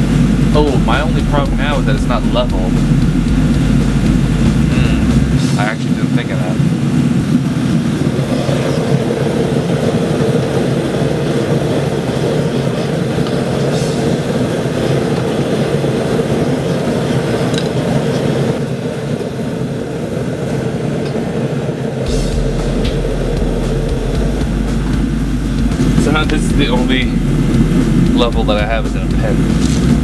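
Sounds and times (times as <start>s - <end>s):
burner fire rushing: 0.0s - 30.0s.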